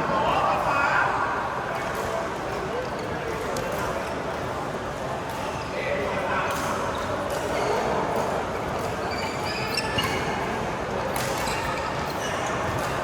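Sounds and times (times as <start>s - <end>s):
shoes squeaking on court floor: 8.8s - 10.6s.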